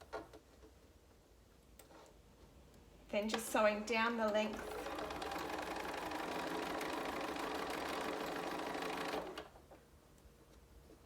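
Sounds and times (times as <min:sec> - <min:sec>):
sewing machine stitching: 0:04.3 - 0:09.6.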